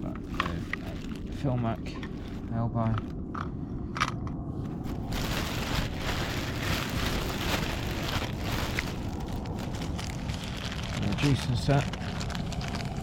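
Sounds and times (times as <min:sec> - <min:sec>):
steady low rumble: 0:00.0 - 0:13.0
rustling handling noise: 0:04.6 - 0:13.0.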